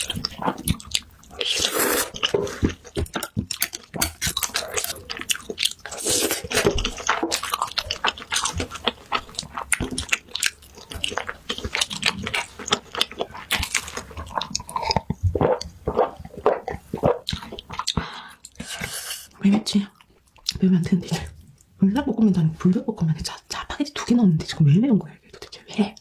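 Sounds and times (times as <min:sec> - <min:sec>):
chewing and biting noodles: 0:00.0 - 0:18.6.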